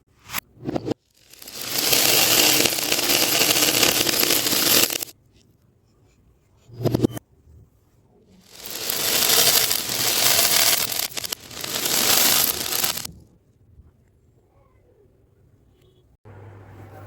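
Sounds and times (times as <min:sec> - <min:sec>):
small beads clattering together: 0:01.2 - 0:05.1, 0:08.4 - 0:13.1.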